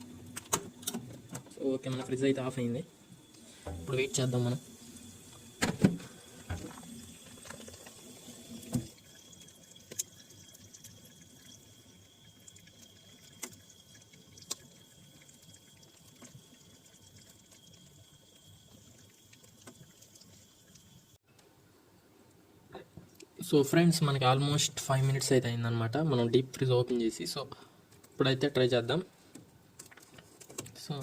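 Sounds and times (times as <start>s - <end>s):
faint high whine: 0.0s - 21.2s
ice melting drips and ticks: 6.2s - 21.2s.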